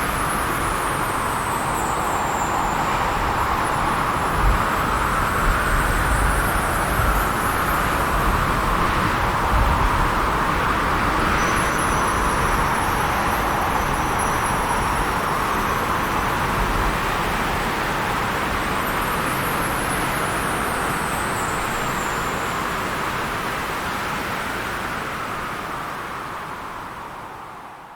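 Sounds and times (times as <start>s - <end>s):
faint high ringing bells: 0.0s - 9.3s, 10.8s - 24.0s
wind howling: 0.0s - 18.8s.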